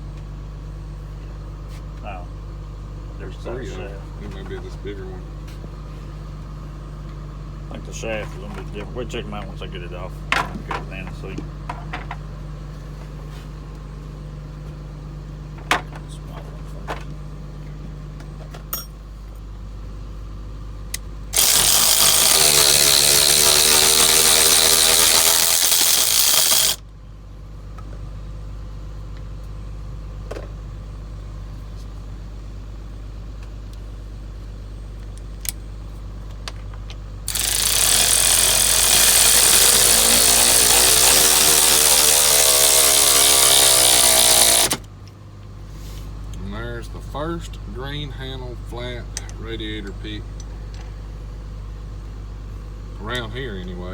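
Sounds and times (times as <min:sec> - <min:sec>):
steady low hum: 0:00.0 - 0:53.9
power tool rushing noise: 0:21.4 - 0:26.8, 0:37.3 - 0:44.8.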